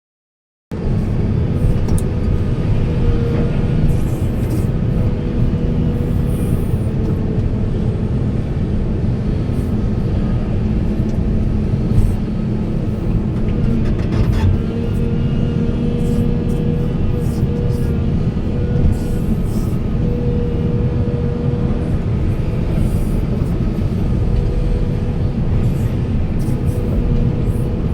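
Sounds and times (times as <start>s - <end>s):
excavator diesel engine rumbling: 0.7s - 27.9s.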